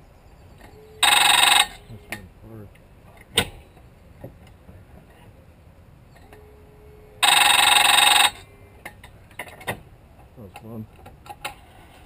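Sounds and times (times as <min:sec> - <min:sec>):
electric buzzer tone: 0:00.8 - 0:02.1, 0:07.2 - 0:08.5.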